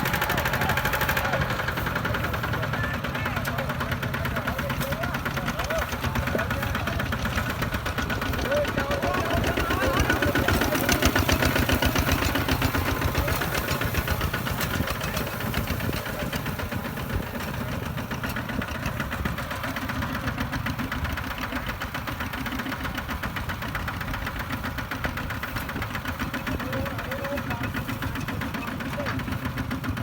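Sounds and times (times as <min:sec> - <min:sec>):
diesel engine chugging: 0:00.0 - 0:30.0.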